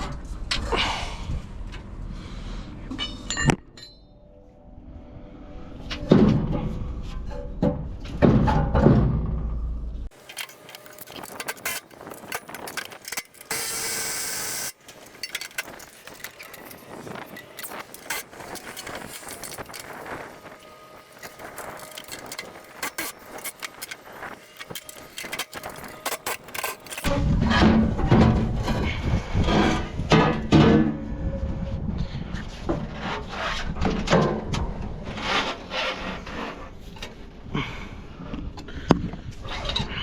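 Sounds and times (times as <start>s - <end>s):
metal tools clinking: 10.1s - 27.1s.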